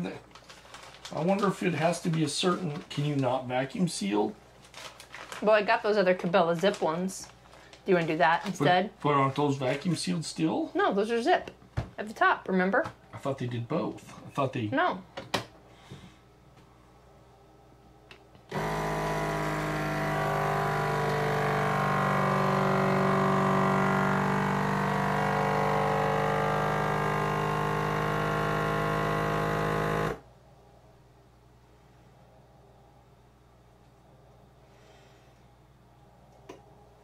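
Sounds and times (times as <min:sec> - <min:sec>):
vacuum sealer pump motor: 0:18.5 - 0:30.2.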